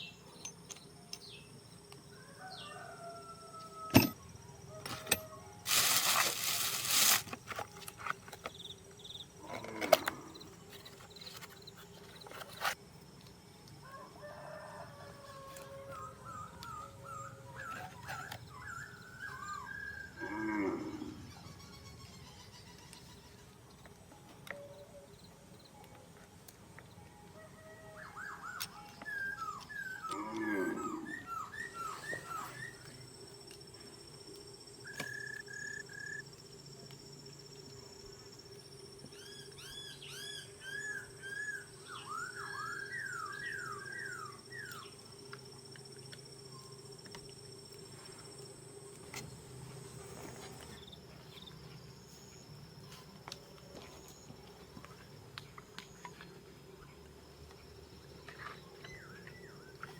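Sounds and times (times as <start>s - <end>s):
high-pitched insect whine: 0.0s - 25.9s, 26.8s - 59.9s.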